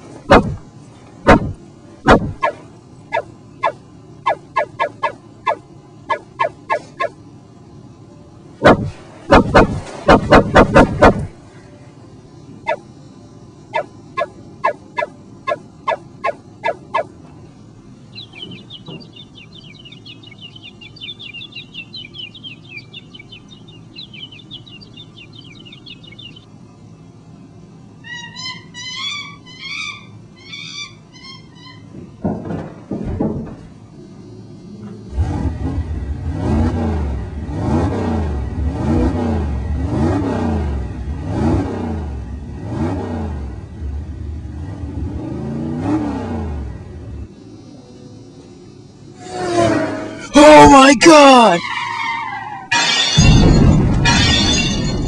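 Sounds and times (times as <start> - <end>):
engine-like revving sound: 1.3 - 7.2, 34.8 - 50.4
bird-like chirping calls: 2.1 - 7.2, 12.6 - 12.9, 13.7 - 17.2, 18.0 - 26.6, 28.0 - 31.9.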